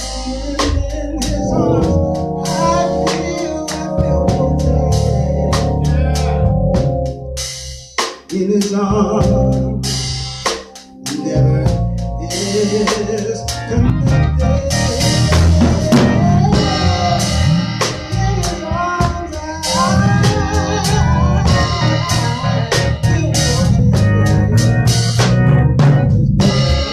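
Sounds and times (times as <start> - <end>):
church band playing: 0.0 - 26.9
drum kit: 0.0 - 26.9.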